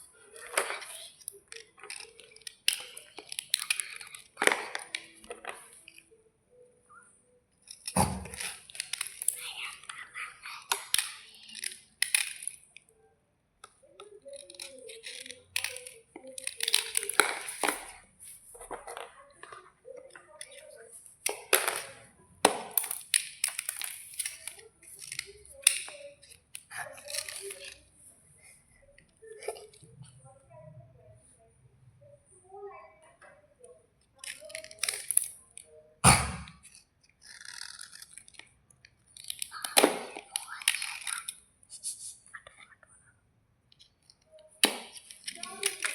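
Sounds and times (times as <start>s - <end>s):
chocolate bars crunching and snapping: 36.0s - 41.2s.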